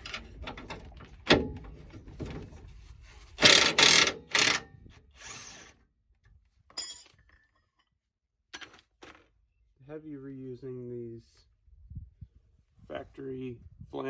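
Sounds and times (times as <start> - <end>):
hand tool rattling bursts: 3.4 - 4.6.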